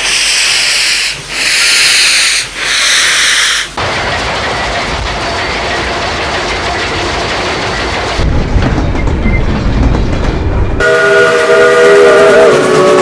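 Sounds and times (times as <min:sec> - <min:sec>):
train rumble: 0:00.0 - 0:13.0
train wheels clacking: 0:00.0 - 0:13.0
steam chime whistle: 0:10.8 - 0:13.0.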